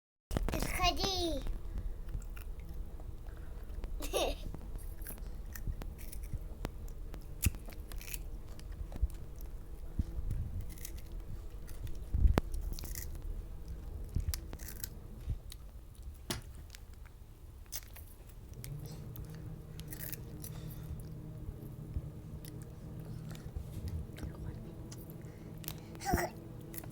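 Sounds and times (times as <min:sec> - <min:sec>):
crunchy snack chewing: 0:04.8 - 0:18.0, 0:18.6 - 0:21.1, 0:26.6 - 0:26.9.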